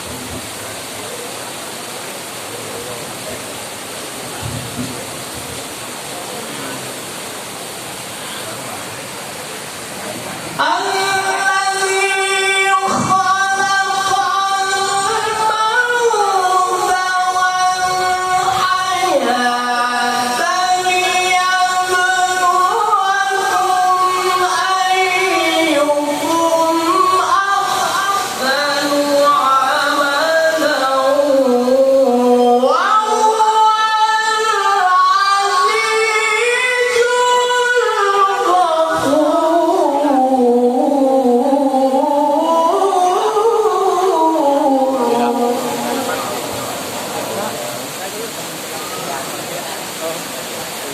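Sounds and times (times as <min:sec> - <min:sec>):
person chanting melodically: 0:10.4 - 0:50.9.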